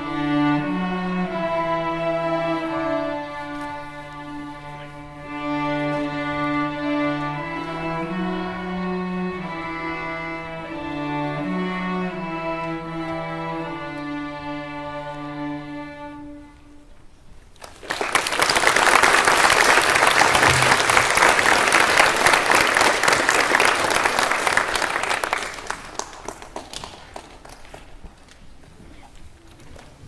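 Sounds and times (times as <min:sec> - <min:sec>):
audience applauding: 0:17.6 - 0:28.0
held musical notes: 0:18.6 - 0:25.0.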